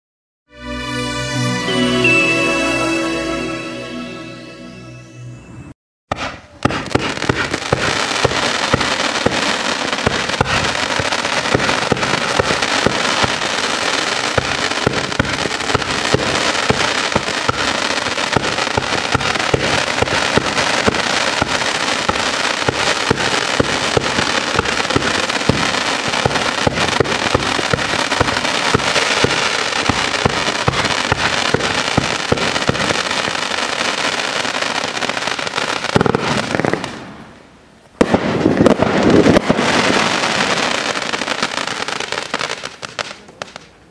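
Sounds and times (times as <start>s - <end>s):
firework shots firing: 6.1s - 33.3s, 35.9s - 37.2s, 38.0s - 41.7s
dense firework crackle: 6.1s - 43.9s.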